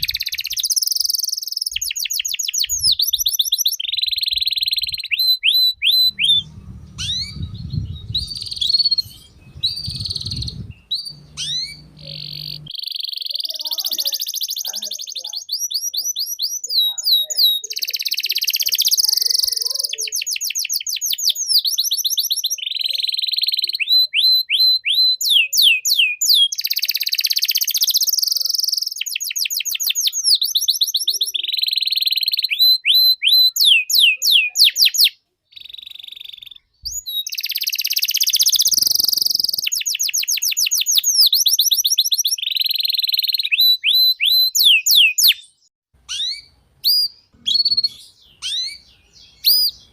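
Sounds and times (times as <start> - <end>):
canary singing: 0.0 - 49.9.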